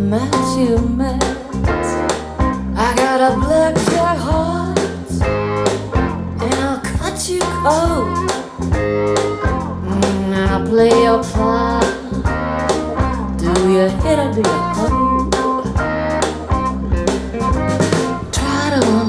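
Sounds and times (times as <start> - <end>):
bass and beat: 0.0 - 19.0
blues song with guitar: 0.0 - 19.0
person singing: 2.8 - 5.1, 6.4 - 8.4, 9.8 - 15.8, 18.4 - 19.0.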